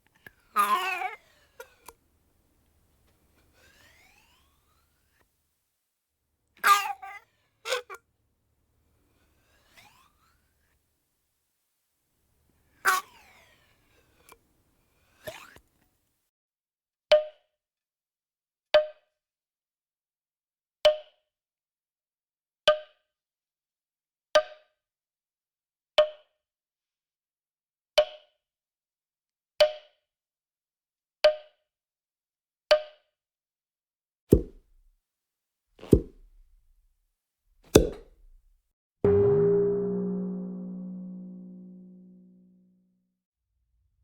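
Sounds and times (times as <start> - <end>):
hollow pitched cartoon knocks: 34.3 - 34.8, 35.8 - 36.7, 37.6 - 38.4
deep dull thuds: 34.4 - 34.8, 35.9 - 36.6, 37.7 - 38.5.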